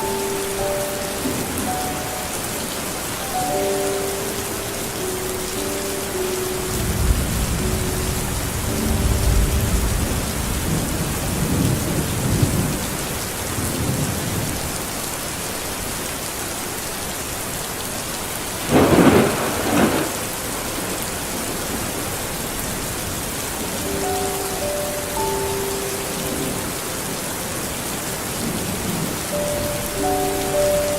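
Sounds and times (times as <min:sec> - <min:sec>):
rain falling: 0:00.0 - 0:30.9
thunder rolling: 0:06.8 - 0:12.9, 0:18.7 - 0:21.0
thunder crack: 0:18.7 - 0:20.2.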